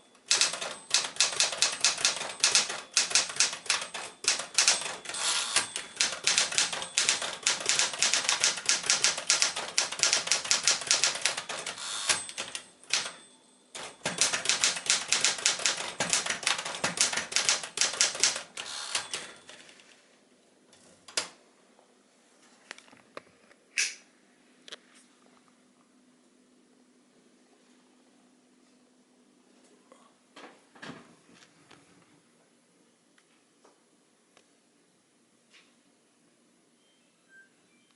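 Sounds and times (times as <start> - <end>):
typewriter keystroke clacks: 0.2 - 13.2, 13.8 - 19.6.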